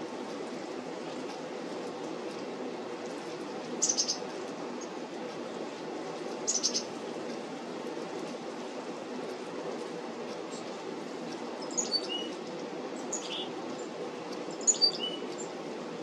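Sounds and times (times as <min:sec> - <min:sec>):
low rushing background noise: 0:00.0 - 0:16.0
chickadees calling: 0:03.8 - 0:05.0, 0:06.4 - 0:06.9, 0:11.6 - 0:15.6.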